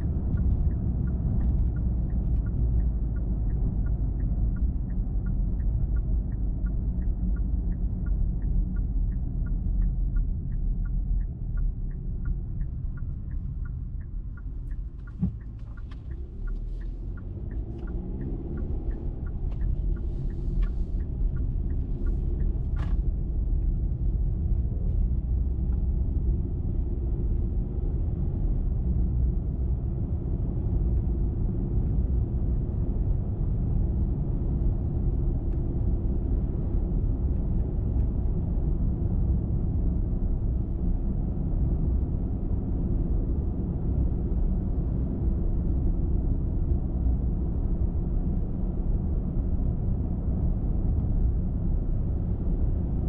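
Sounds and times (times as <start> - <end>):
car driving at highway speed: 0.0 - 53.0.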